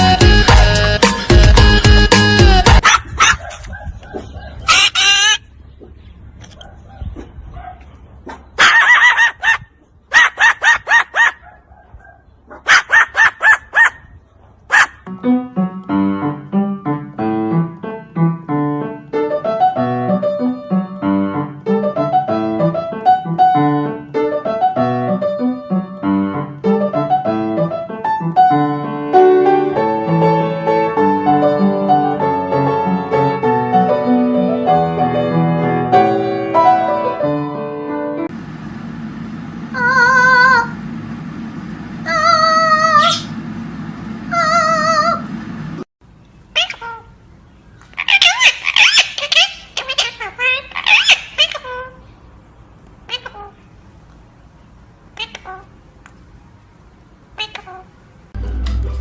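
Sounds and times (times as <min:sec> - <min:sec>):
cackling bird calls: 0:03.2 - 0:06.0
piano music with held notes: 0:15.1 - 0:38.3.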